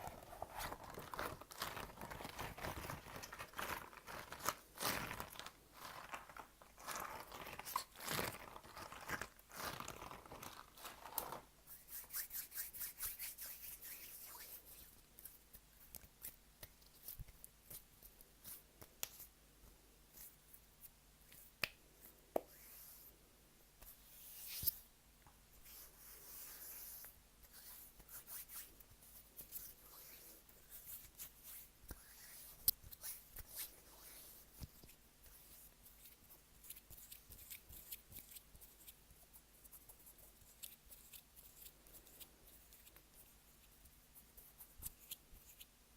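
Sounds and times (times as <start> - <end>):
crinkling and rustling: 0.0 - 11.5.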